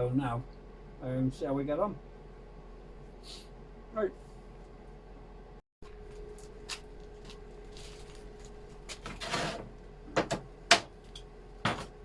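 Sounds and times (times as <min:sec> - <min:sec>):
faint steady hum: 0:00.0 - 0:12.0
scrape in workshop: 0:09.0 - 0:09.8.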